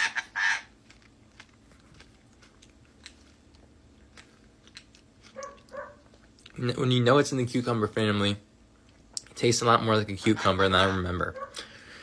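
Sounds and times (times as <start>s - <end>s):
wet eating clicks: 0.8s - 6.6s, 8.8s - 9.4s.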